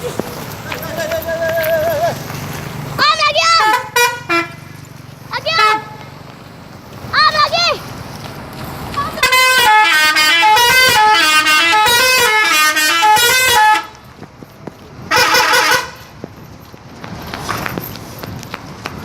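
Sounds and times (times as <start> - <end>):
musical bus horn playing a tune: 3.5 - 4.7, 5.5 - 6.0, 9.2 - 14.0, 15.1 - 16.1
short horn blast: 9.2 - 13.9, 15.1 - 16.1.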